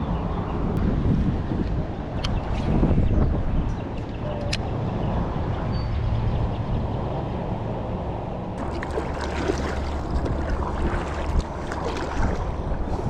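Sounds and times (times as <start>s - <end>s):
wind rumbling on microphone: 0.0s - 13.0s
water lapping against hull: 8.6s - 13.0s.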